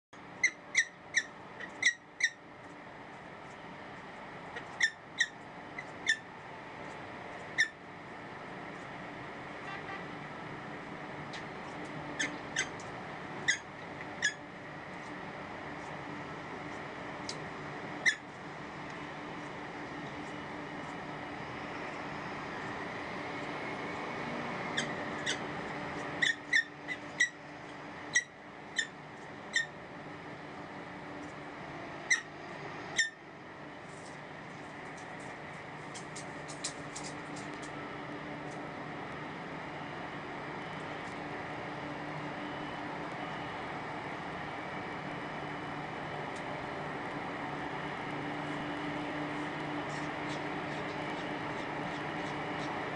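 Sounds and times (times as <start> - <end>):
steady background hum: 0.2 - 52.9
falcon chip calls: 13.4 - 14.4.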